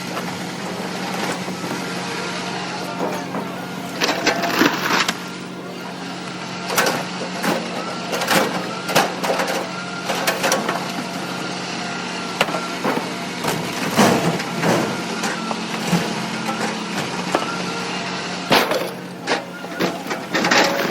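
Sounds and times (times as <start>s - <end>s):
vehicle engine idling: 0.0s - 20.9s
scrap metal clanking: 18.5s - 20.9s.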